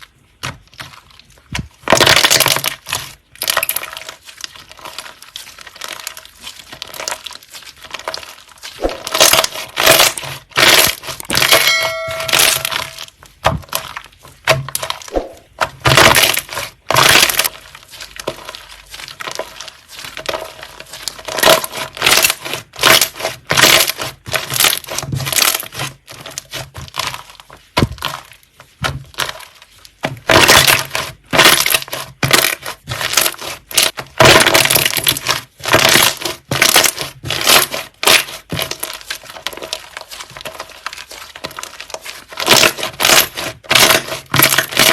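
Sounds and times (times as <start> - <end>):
slime squeezed crackling: 0.6 - 13.0, 29.1 - 44.9.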